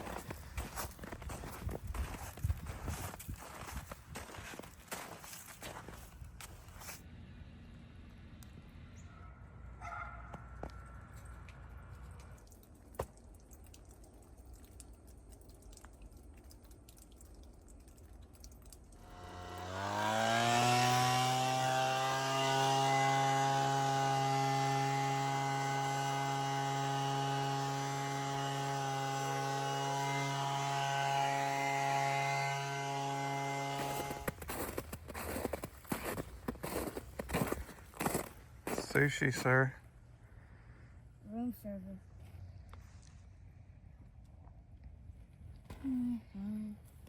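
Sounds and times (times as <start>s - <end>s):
motor spinning up and running: 19.0s - 34.9s.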